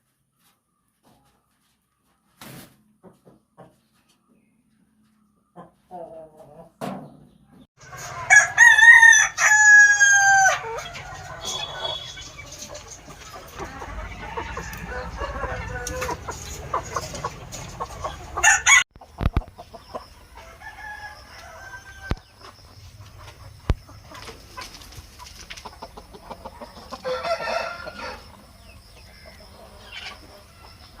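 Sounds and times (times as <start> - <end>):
chickens clucking: 1.0 - 31.0
rooster crowing: 7.8 - 12.4, 13.6 - 16.2, 18.4 - 18.9, 20.4 - 22.3, 26.9 - 28.4.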